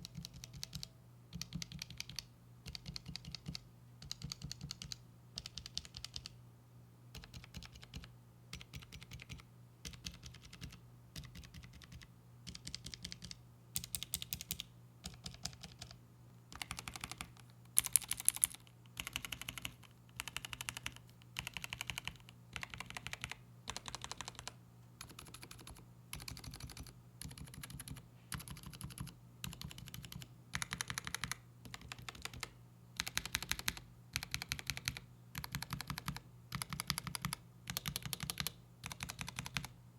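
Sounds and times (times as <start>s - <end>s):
faint low hum: 0.0s - 39.9s
mechanical keyboard switches clicking: 16.6s - 39.7s.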